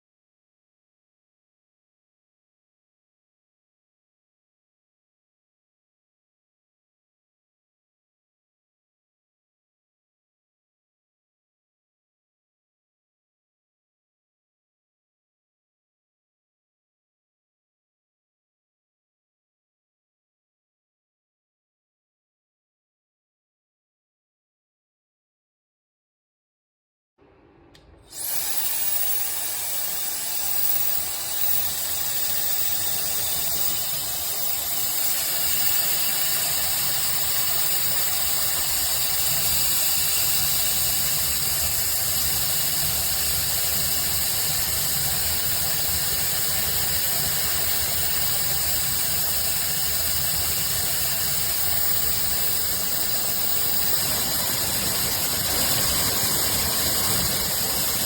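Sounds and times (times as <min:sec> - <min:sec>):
hair dryer running: 0:28.1 - 0:58.0.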